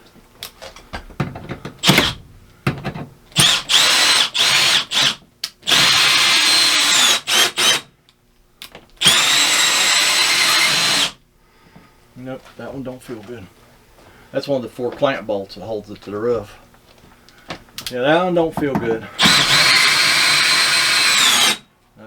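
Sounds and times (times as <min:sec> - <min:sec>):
power drill running: 0:01.8 - 0:02.2, 0:03.3 - 0:07.9, 0:09.0 - 0:11.2, 0:18.6 - 0:21.7.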